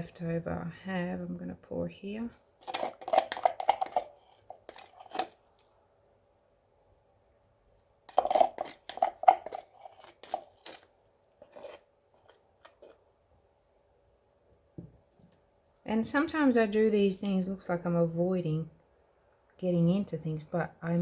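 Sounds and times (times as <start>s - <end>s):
plastic cup scraped and tapped: 2.6s - 5.4s, 8.1s - 13.0s.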